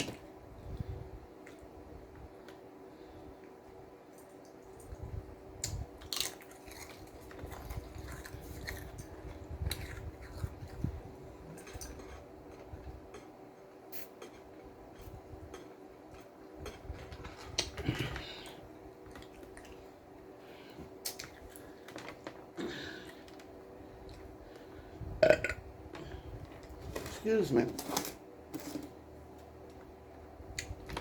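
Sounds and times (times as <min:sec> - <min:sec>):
soft chewing: 0:03.3 - 0:24.9
sandwich crunching: 0:05.6 - 0:10.7.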